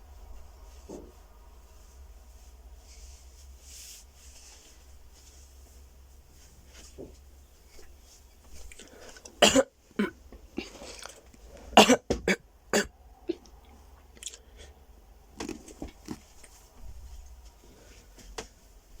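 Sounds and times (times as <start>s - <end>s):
person coughing harshly: 9.4s - 10.8s, 11.7s - 12.9s.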